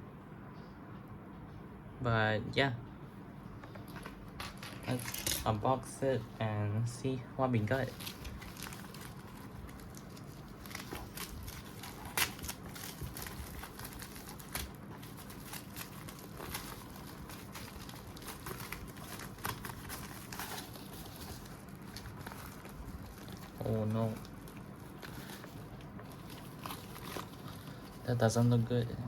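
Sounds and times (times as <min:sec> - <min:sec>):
plastic packaging crinkling: 0:03.6 - 0:05.6, 0:07.6 - 0:28.9.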